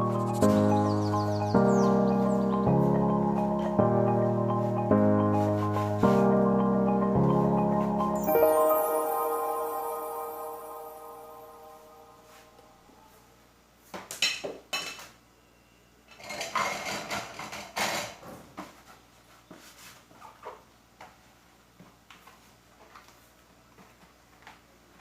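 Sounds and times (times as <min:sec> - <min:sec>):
dishes clinking and clattering: 0:14.2 - 0:15.1, 0:16.2 - 0:18.2.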